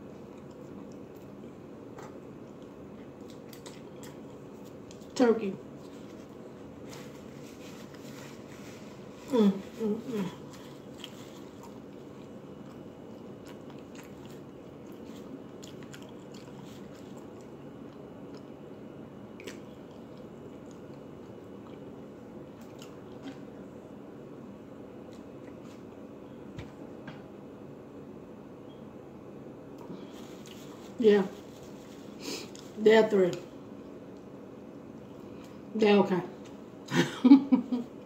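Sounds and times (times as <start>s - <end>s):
person chewing food: 0.0s - 9.2s, 10.2s - 23.6s, 25.0s - 26.0s, 29.8s - 30.8s.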